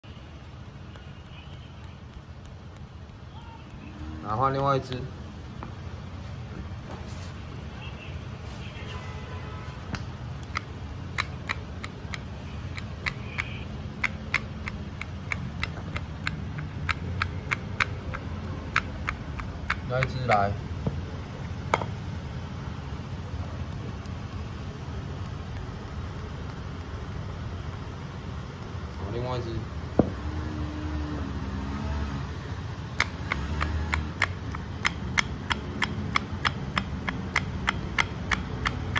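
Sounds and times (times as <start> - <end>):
sharp metallic clicks: 9.9 - 20.6, 32.9 - 38.9.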